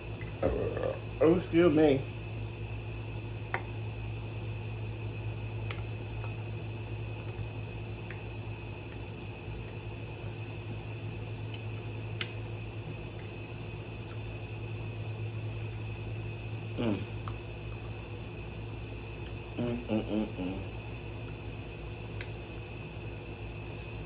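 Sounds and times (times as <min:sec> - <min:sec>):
steady low hum: 0:00.0 - 0:24.0
chewing: 0:00.1 - 0:01.2, 0:05.6 - 0:14.4, 0:15.4 - 0:20.0, 0:20.6 - 0:24.0.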